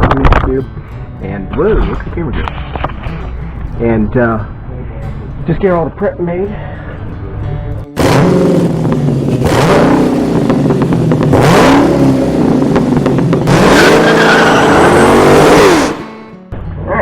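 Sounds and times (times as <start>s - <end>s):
car engine revving hard: 8.0s - 16.3s
loud rushing noise: 11.4s - 16.4s.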